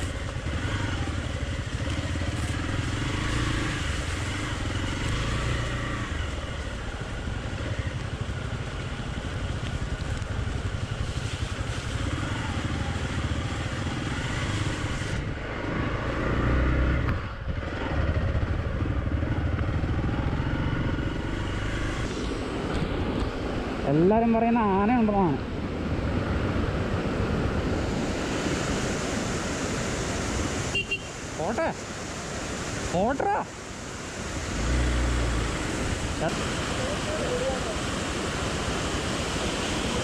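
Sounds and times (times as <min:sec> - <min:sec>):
motorcycle engine running: 0:00.0 - 0:15.1, 0:16.4 - 0:23.5.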